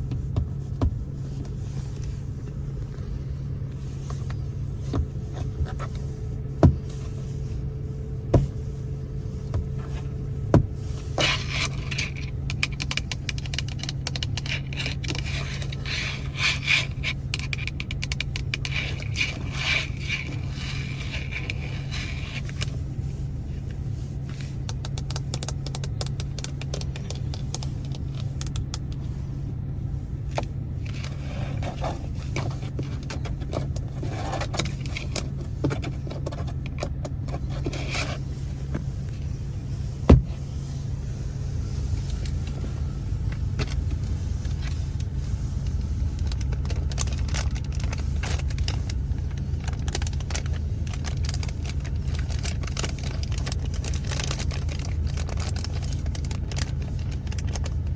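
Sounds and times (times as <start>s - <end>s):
steady low hum: 0.0s - 57.9s
fingernails scratching on plastic trim: 8.2s - 22.7s.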